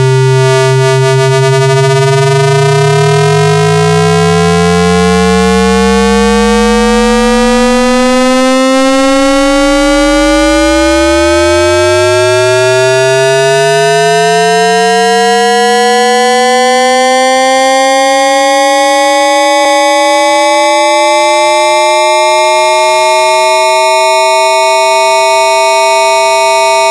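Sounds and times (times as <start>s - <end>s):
deep tone sweeping up: 0.0s - 26.9s
whistling tones gliding upward: 3.7s - 15.3s.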